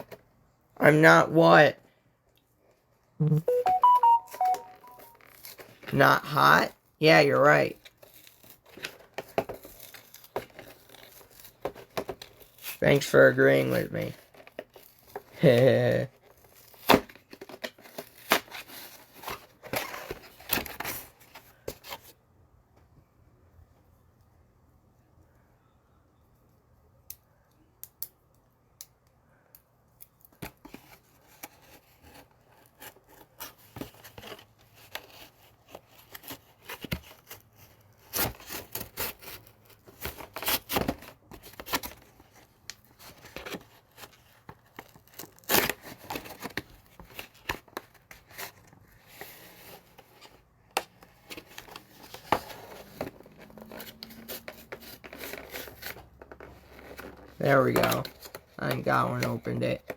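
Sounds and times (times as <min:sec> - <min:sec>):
packaging being torn open: 0:44.7 - 0:47.5.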